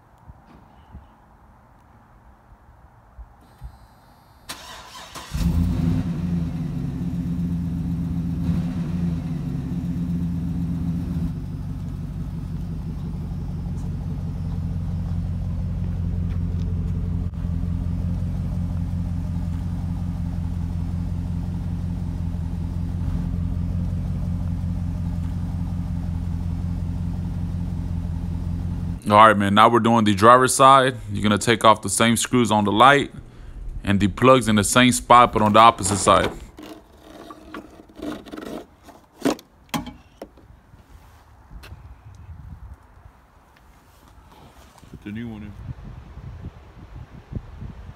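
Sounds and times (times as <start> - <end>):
engine cranking: 4.5 - 5.9, 33.1 - 39.4
engine idling: 4.6 - 29.0, 32.6 - 38.6.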